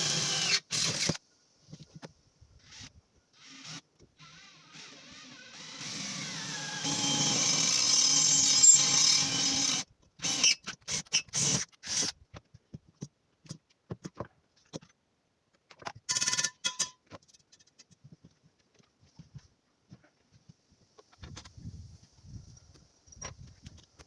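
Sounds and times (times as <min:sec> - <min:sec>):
electric drill running: 0:00.0 - 0:01.1, 0:03.4 - 0:10.4.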